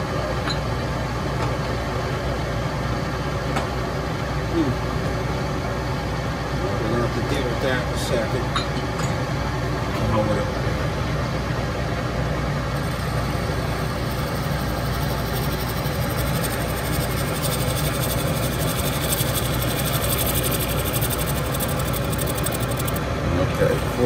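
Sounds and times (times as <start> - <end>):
lathe motor hum: 12.8 - 24.0.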